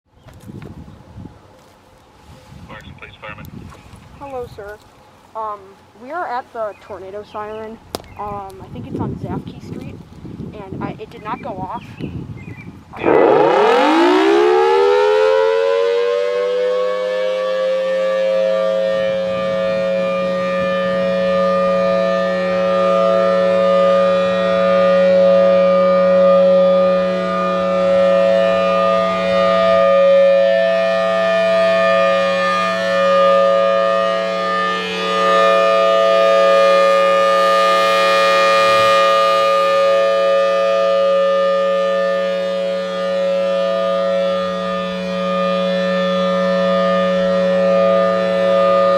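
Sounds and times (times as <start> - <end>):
warning siren wailing: 13.0 - 48.9.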